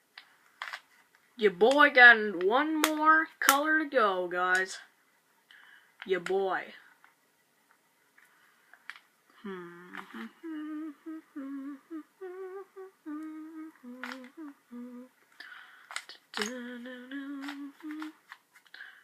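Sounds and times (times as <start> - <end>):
person humming a tune: 9.4 - 15.2, 16.4 - 18.2.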